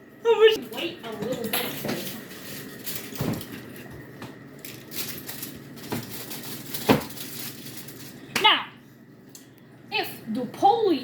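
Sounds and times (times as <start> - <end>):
aluminium foil crinkling: 1.0 - 3.9, 4.5 - 8.3.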